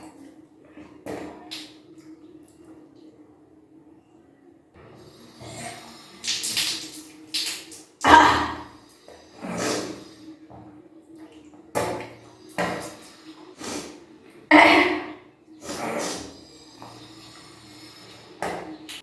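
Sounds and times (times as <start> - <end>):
water gushing from mouth: 5.1 - 10.2, 12.0 - 18.6
person retching: 8.0 - 8.8.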